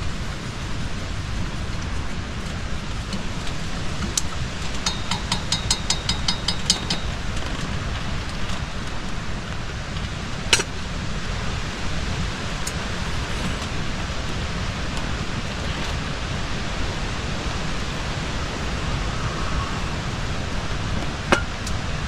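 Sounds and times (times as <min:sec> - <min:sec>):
rain: 0:00.0 - 0:22.0
storm wind: 0:00.0 - 0:22.0
spoon clinking in cup: 0:04.8 - 0:07.2.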